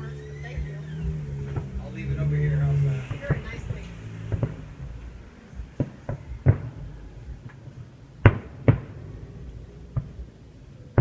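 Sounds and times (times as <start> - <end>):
distant fireworks bangs: 0.0 - 11.0.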